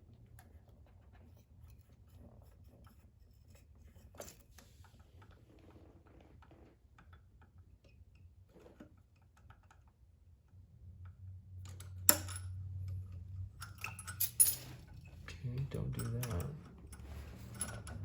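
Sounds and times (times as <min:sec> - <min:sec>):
metal hand tools clinking: 0:13.6 - 0:15.0.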